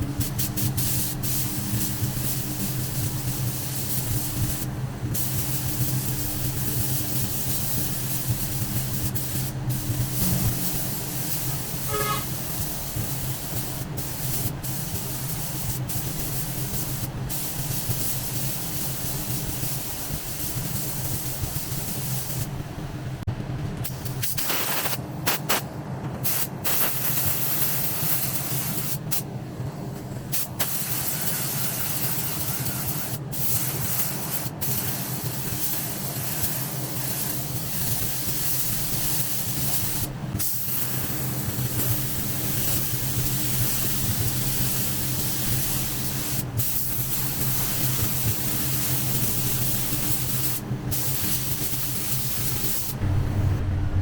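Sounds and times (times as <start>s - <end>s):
steady low hum: 0.0s - 24.2s, 37.6s - 54.0s
paint spray gun hissing: 0.3s - 22.5s, 30.6s - 53.0s.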